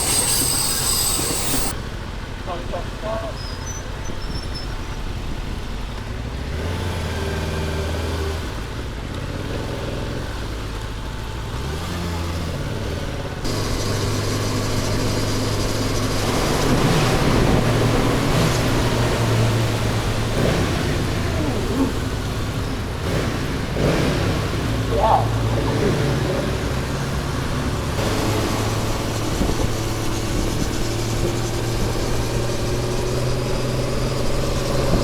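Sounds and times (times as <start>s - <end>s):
motorcycle engine revving: 11.5s - 35.0s
wind rushing over microphone: 13.5s - 35.0s.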